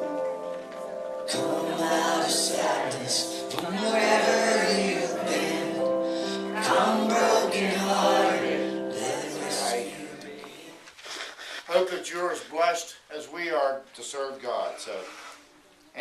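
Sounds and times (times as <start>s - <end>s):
choir and congregation singing a hymn: 1.2s - 10.9s.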